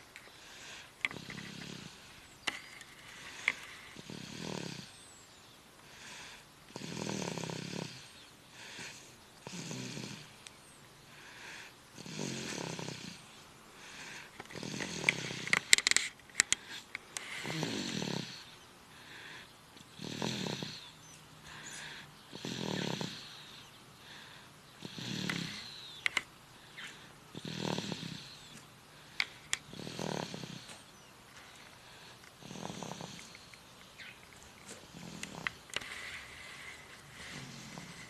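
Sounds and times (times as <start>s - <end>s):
person snoring: 0.5s - 2.1s, 3.1s - 4.9s, 5.9s - 10.3s, 11.2s - 15.6s, 16.6s - 25.8s, 27.4s - 28.6s, 29.7s - 30.8s, 32.4s - 33.4s, 34.9s - 38.0s
sharp clicks: 14.4s - 17.3s, 25.3s - 26.3s.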